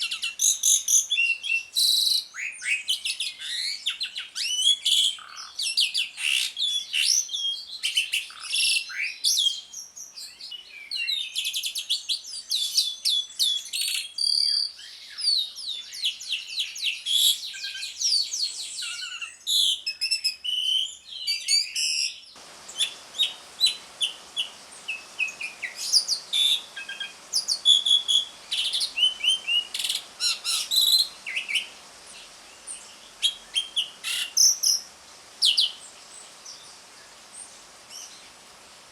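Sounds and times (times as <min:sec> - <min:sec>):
starling chattering: 0:22.4 - 0:38.6
steady hiss: 0:22.4 - 0:38.9.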